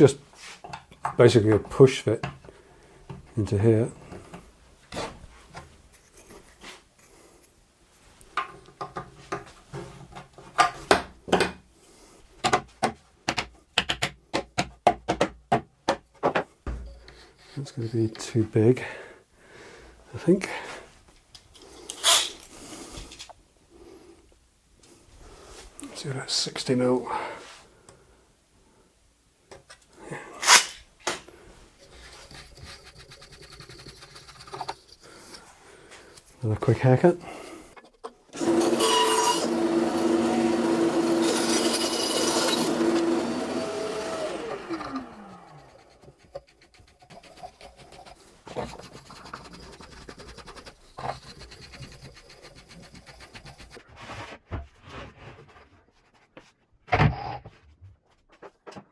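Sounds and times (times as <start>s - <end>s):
power tool motor whining: 38.4s - 45.8s.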